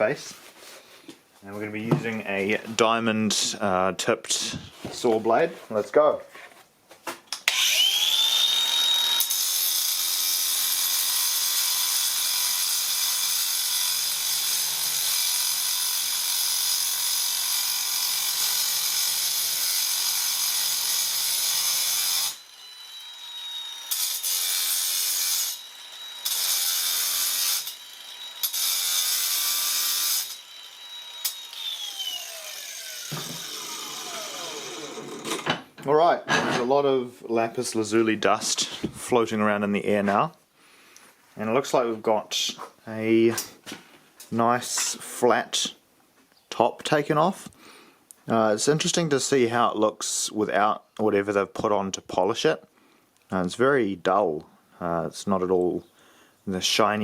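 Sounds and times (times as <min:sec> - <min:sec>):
grinder motor winding down: 0:07.5 - 0:11.0, 0:27.6 - 0:35.4
angle grinder cutting stone: 0:07.5 - 0:35.4.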